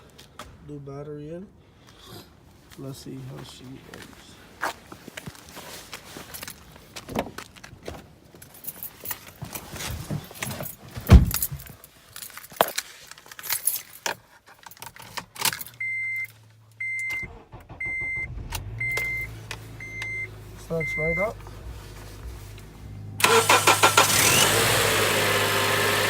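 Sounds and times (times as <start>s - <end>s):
keys jangling: 10.4s - 15.8s
car engine starting and running: 15.4s - 26.0s
car warning chime beeping: 15.8s - 21.4s.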